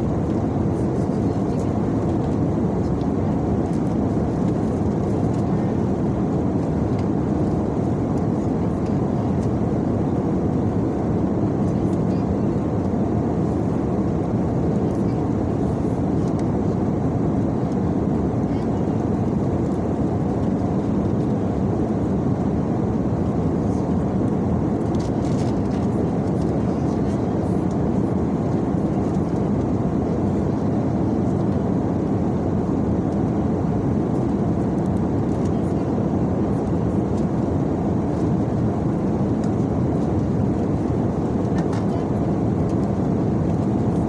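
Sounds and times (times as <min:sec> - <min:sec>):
airliner cabin rumble: 0:00.0 - 0:44.0.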